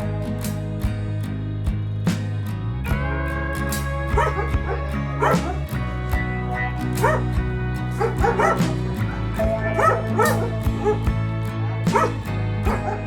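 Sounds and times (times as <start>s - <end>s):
background music: 0.0s - 13.0s
dog yipping and barking: 4.2s - 5.6s, 7.0s - 7.2s, 8.0s - 8.7s, 9.4s - 11.1s, 11.9s - 13.0s.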